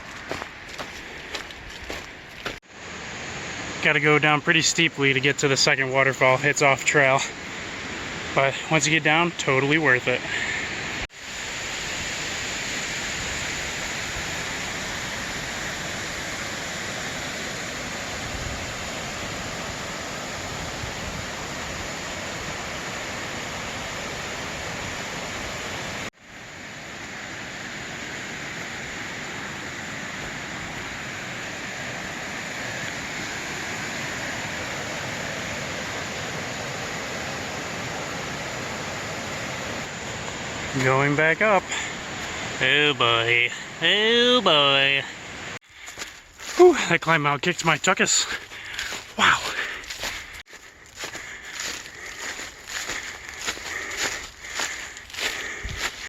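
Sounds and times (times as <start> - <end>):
waterfall rushing: 2.8 - 45.6, 48.8 - 49.6.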